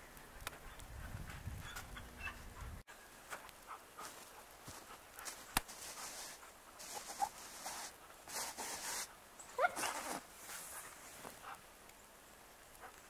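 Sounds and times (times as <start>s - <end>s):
scuffing noise: 3.3s - 9.1s.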